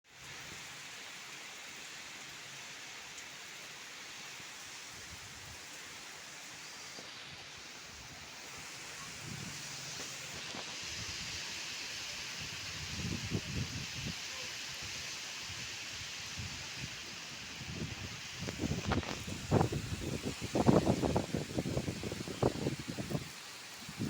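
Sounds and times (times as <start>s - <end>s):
steady rain: 0.0s - 24.0s
wind rumbling on microphone: 7.9s - 11.6s, 12.3s - 24.0s.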